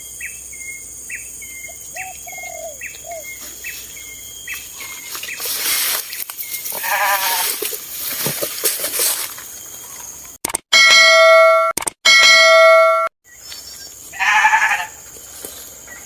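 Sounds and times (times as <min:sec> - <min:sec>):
bird chirps: 0:00.0 - 0:07.0
rustling: 0:04.8 - 0:09.6
farm animal bleating: 0:06.7 - 0:07.7, 0:14.1 - 0:15.0
bright ringing tone: 0:10.7 - 0:13.1.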